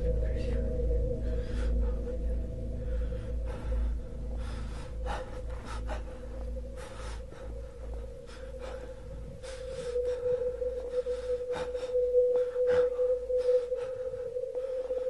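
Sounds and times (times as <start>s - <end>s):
humming drone: 0.0s - 15.0s
low rumble: 0.0s - 15.0s.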